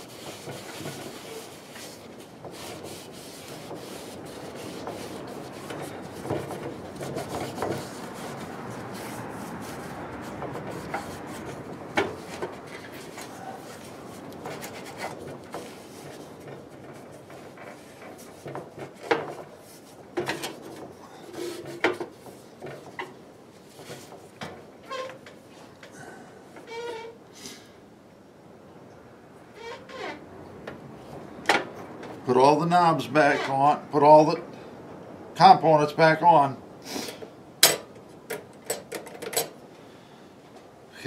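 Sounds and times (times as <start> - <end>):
rubbing on heater: 0.0 - 22.9.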